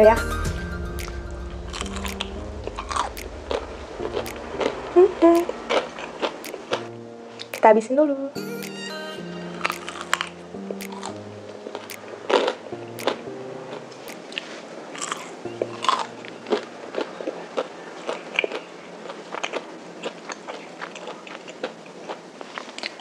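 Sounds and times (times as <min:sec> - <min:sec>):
person biting and chewing crispy food: 0:01.1 - 0:04.8, 0:05.4 - 0:06.9, 0:09.6 - 0:10.2, 0:10.8 - 0:11.1, 0:12.3 - 0:13.2, 0:14.3 - 0:23.0.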